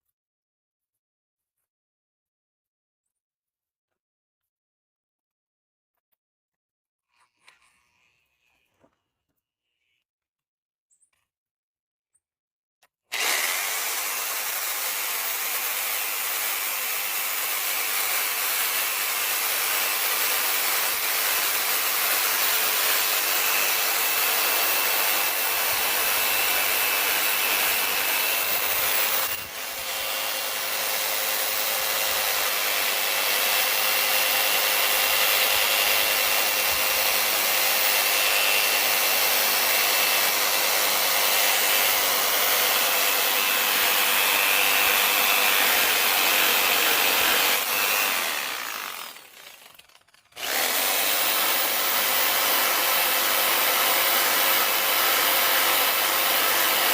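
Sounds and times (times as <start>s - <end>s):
reciprocating saw cutting wood: 13.1s - 56.9s.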